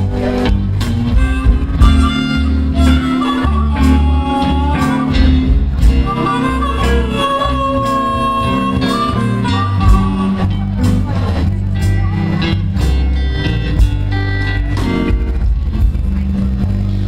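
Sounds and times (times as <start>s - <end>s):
bass: 0.0s - 17.0s
drums: 0.0s - 17.0s
lead line with bending notes: 0.0s - 17.0s.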